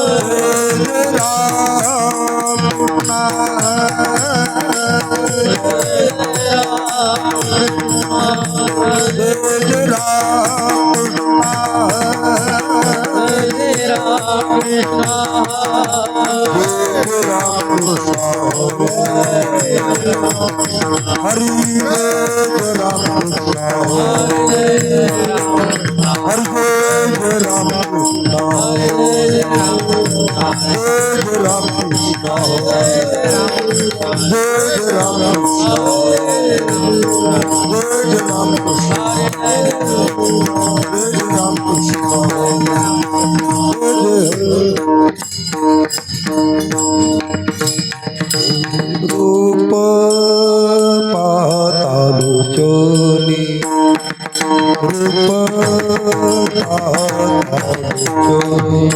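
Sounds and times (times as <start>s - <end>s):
hand drums: 0.0s - 49.7s, 52.3s - 58.9s
jingling small percussion: 0.0s - 58.9s.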